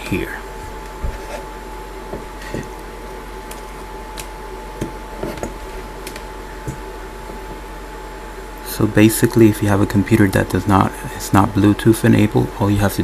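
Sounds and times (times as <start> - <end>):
faint electrical hum: 0.0 - 13.0.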